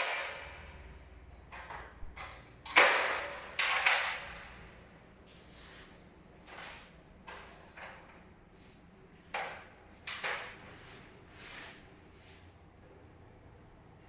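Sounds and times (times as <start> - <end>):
metal cabinet doors and drawers: 0.0 - 4.9, 9.2 - 11.8.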